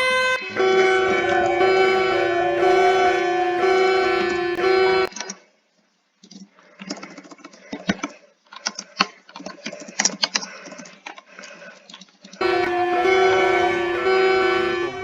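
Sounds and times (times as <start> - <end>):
chiming alarm tone: 0.0 - 5.1, 12.4 - 15.0.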